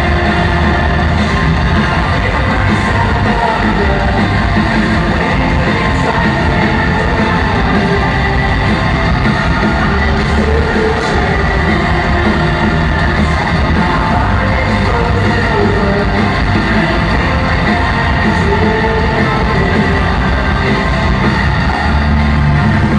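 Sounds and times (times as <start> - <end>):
rock band playing live: 0.0 - 22.9
yelled singing or crowd voices: 0.0 - 22.9.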